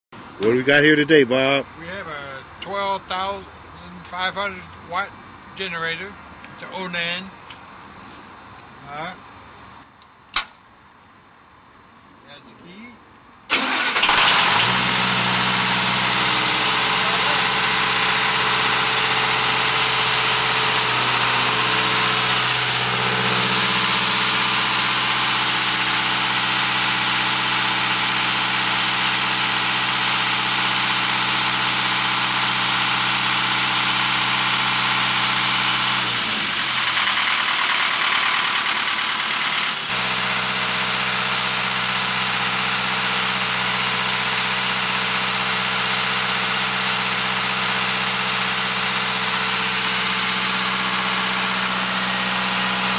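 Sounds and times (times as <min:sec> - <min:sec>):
diesel generator running: 0:13.5 - 0:52.9.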